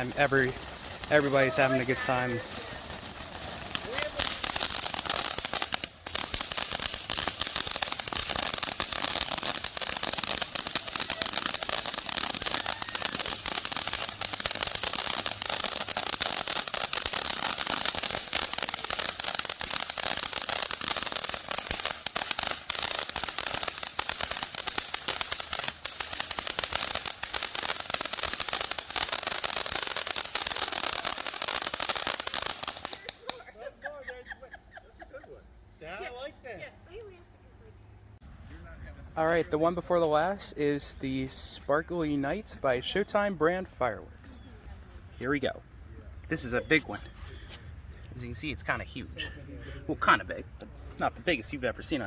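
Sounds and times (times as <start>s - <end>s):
firework fountain hissing and crackling: 0.0s - 33.6s.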